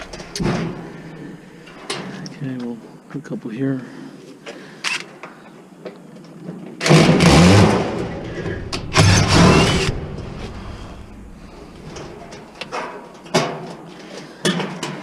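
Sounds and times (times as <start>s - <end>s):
power tool motor running: 8.8s - 10.7s.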